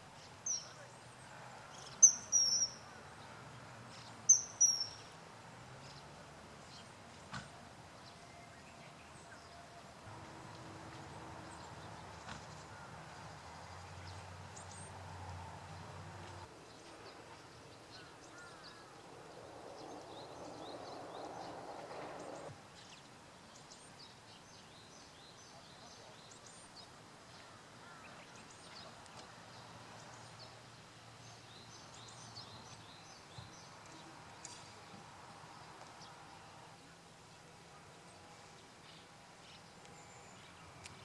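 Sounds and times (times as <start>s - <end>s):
small birds chirping: 1.7s - 2.9s, 16.4s - 23.0s
rushing hiss: 18.1s - 22.5s.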